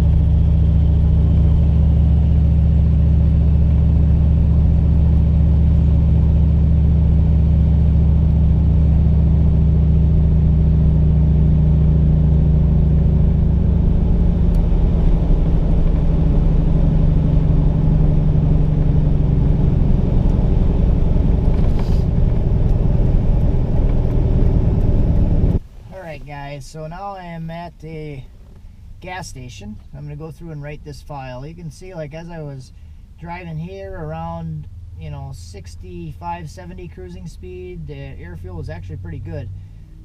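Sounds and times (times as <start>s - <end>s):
truck engine running: 0.0s - 25.6s.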